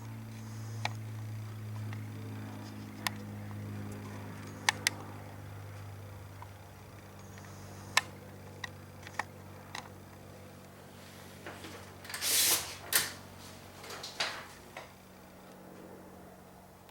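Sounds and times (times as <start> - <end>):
sharp clicks: 3.9 - 5.1
scraping or rustling: 11.0 - 14.6.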